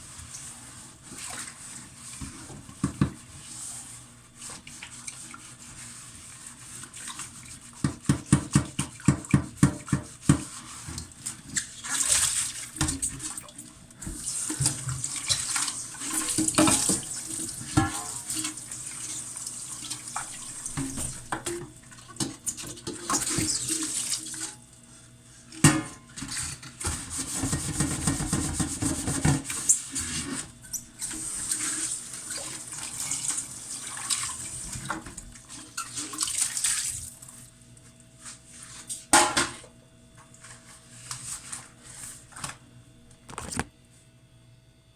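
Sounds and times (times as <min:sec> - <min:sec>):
pots clattering: 0:16.1 - 0:18.6.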